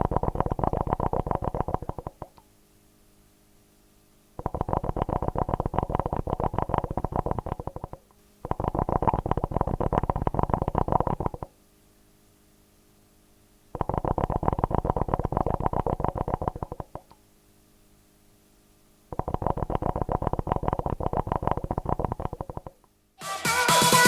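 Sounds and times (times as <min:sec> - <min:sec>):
hookah water bubbling: 0:00.0 - 0:02.4, 0:04.4 - 0:11.6, 0:13.7 - 0:17.2, 0:19.1 - 0:22.9.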